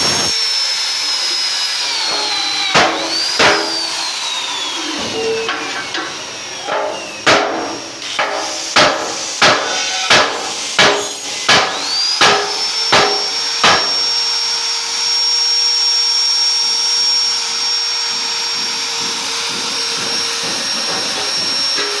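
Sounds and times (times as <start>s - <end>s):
electric drill whining: 0.0s - 22.0s
sharp knocks: 2.1s - 4.2s, 4.9s - 14.2s, 18.5s - 22.0s.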